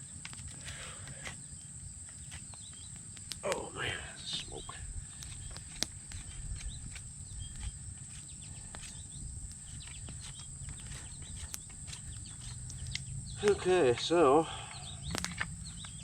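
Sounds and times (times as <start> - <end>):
campfire crackling and popping: 0.0 - 16.0
low steady rumble: 3.8 - 16.0.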